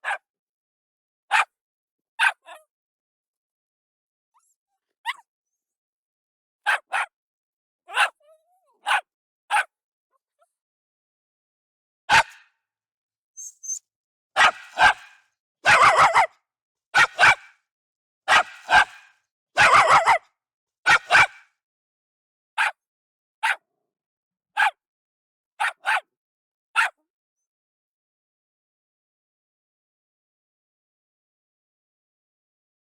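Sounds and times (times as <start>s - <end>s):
dog barking: 0.0s - 0.3s, 1.3s - 1.5s, 2.2s - 2.6s, 6.6s - 7.2s, 7.9s - 8.2s, 8.8s - 9.7s, 12.1s - 12.5s, 14.4s - 16.3s, 17.0s - 17.6s, 18.3s - 20.2s, 20.9s - 21.5s, 22.6s - 22.8s, 23.4s - 23.6s, 24.6s - 24.8s, 25.6s - 26.1s, 26.8s - 27.0s.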